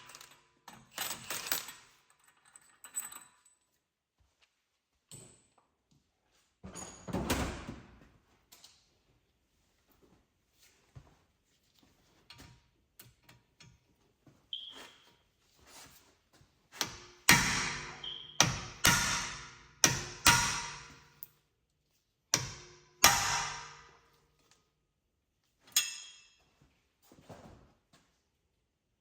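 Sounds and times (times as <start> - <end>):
hammer striking steel: 16.8 - 21.1, 22.4 - 24.0.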